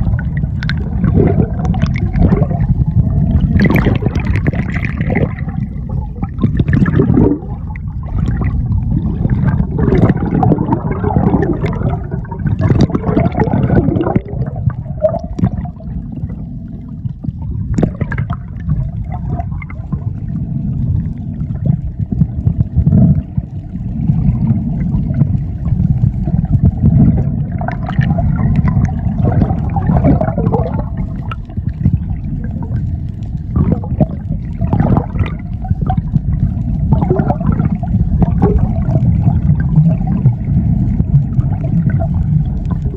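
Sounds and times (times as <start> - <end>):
faint steady hum: 0.0 - 42.9
heavy low rumble: 0.0 - 42.9
water gurgling and bubbling: 0.0 - 42.9.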